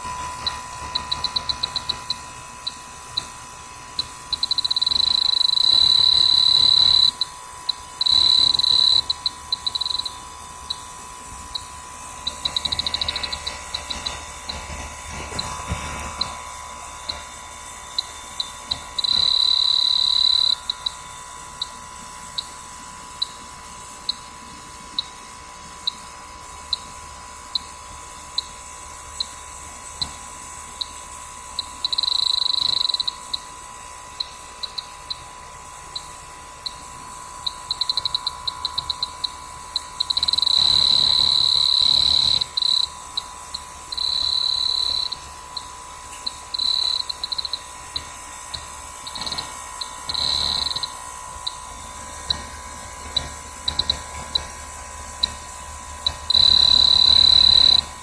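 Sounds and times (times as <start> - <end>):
electronic detector beeping: 0.0 - 22.6, 23.2 - 58.0.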